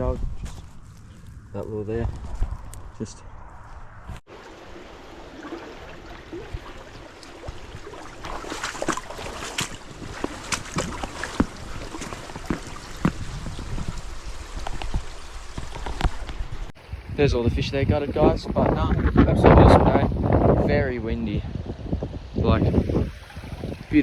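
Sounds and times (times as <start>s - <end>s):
wind on microphone: 0.0s - 4.2s, 5.9s - 24.0s
splashes and knocks: 4.3s - 16.7s
river water running: 4.3s - 18.8s, 22.6s - 24.0s.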